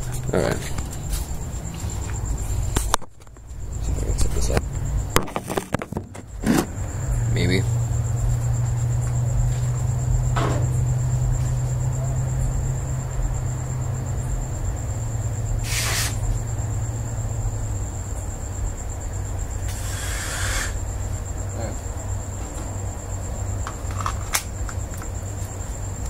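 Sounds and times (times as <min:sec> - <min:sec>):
crickets trilling: 0:00.0 - 0:26.0
short gas hisses: 0:15.6 - 0:16.2, 0:19.7 - 0:20.8.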